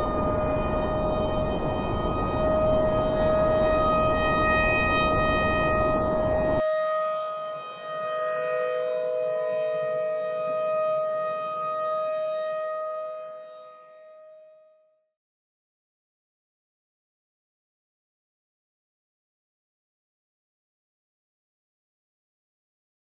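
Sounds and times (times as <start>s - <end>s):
steady siren tone: 0.0s - 15.1s
lower siren tone: 0.0s - 15.2s.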